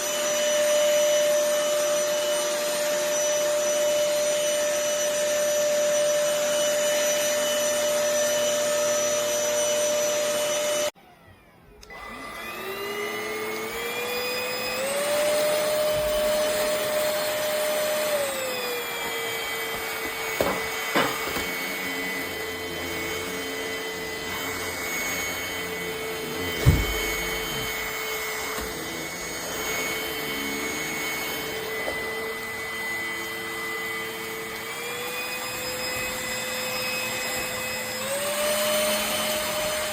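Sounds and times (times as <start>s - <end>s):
stick vacuum motor whining: 0.0s - 39.9s
knocks: 26.5s - 27.8s.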